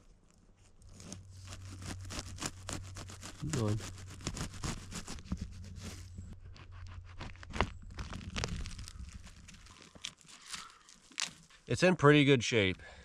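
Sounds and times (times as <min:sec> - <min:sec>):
forest debris crackling and snapping: 0:07.3 - 0:11.7.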